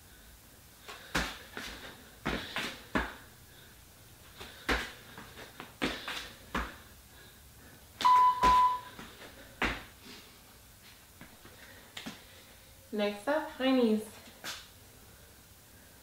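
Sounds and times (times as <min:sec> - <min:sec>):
interval timer beeps: 0:08.0 - 0:08.9.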